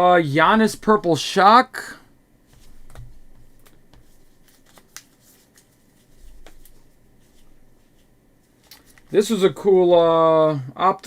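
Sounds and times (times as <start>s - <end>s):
cards sliding: 2.5s - 9.1s.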